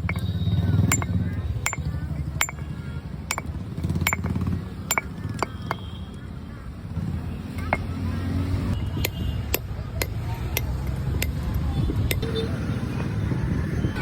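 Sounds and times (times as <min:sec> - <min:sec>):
stone-on-stone knocks: 0:00.9 - 0:02.6, 0:03.3 - 0:05.8.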